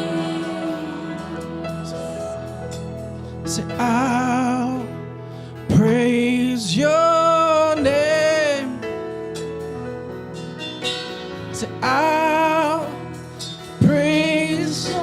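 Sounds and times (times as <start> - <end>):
person singing long wavering notes: 0.0 - 2.5
instrumental accompaniment: 0.0 - 15.0.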